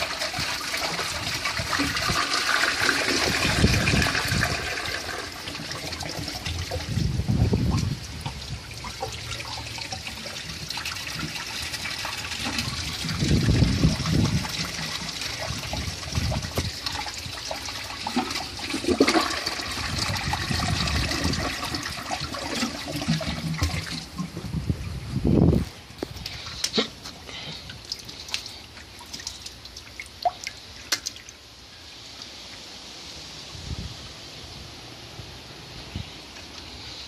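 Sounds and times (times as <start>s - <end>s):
toilet flushing: 0.0s - 7.0s, 8.2s - 24.4s.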